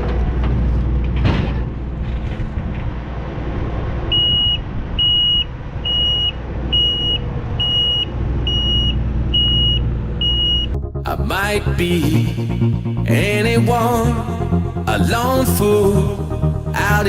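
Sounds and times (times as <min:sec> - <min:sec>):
heavy machinery engine running: 0:00.0 - 0:11.0
reversing alarm beeps: 0:04.1 - 0:10.8.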